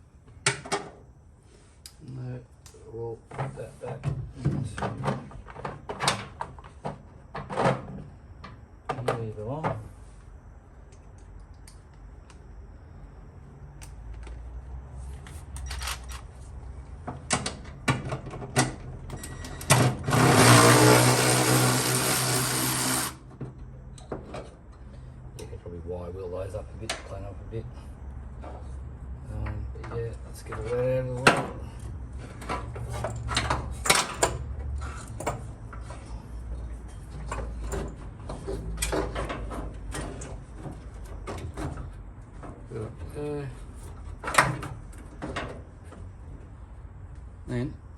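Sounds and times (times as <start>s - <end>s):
wire wheel power tool running: 20.0s - 23.2s.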